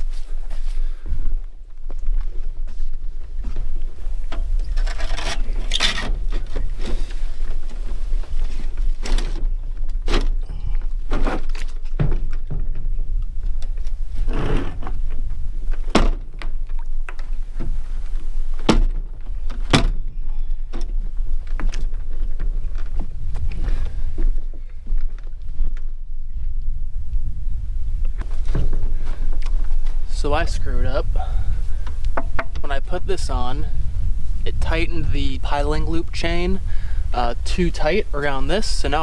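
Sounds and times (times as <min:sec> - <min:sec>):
wind rumble on microphone: 0:00.0 - 0:39.0
sharp knocks and thunks: 0:14.2 - 0:16.6, 0:17.2 - 0:20.0.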